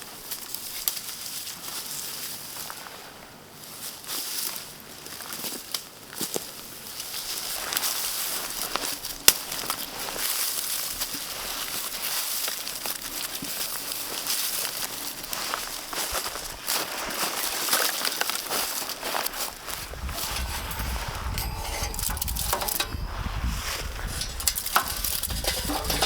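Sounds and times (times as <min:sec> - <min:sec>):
campfire crackling: 0:23.7 - 0:26.0.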